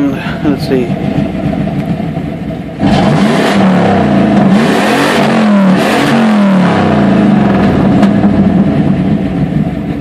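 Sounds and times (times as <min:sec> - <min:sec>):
car engine revving: 0:00.0 - 0:10.0.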